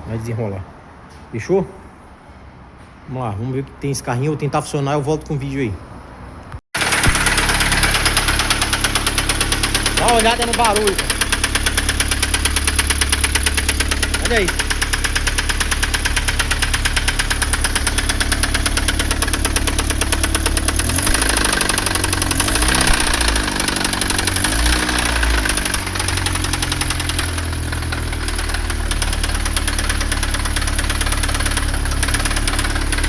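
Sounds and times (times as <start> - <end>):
car engine running: 6.8 - 33.0
loud rapid engine knocking: 6.8 - 33.0.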